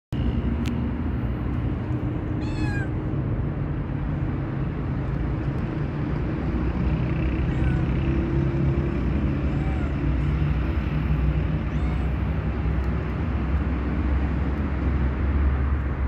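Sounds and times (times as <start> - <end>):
cat meowing: 2.3 - 3.1, 7.3 - 8.2, 9.3 - 10.4, 11.5 - 12.5.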